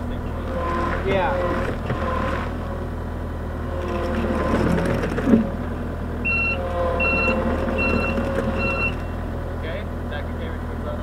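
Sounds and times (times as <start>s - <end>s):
diesel engine running: 0.0s - 11.0s
backup alarm beeping: 6.2s - 9.3s.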